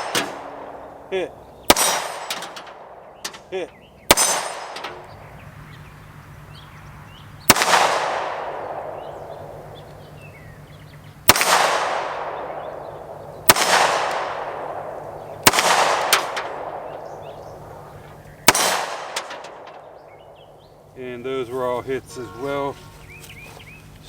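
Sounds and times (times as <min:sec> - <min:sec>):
pistol shots: 0:00.0 - 0:01.1, 0:01.7 - 0:03.5, 0:04.1 - 0:05.1, 0:07.4 - 0:09.9, 0:11.2 - 0:20.5.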